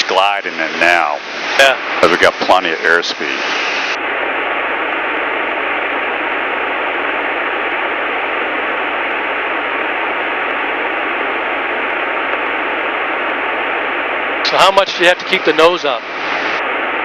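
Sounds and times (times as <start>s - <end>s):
aircraft cockpit noise hiss: 0.0s - 17.0s.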